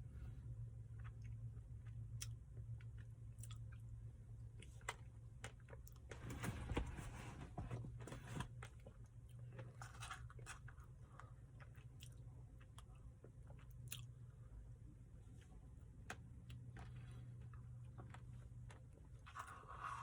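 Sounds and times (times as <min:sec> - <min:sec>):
mouth chewing and crunching: 0:00.9 - 0:06.1, 0:08.6 - 0:14.4.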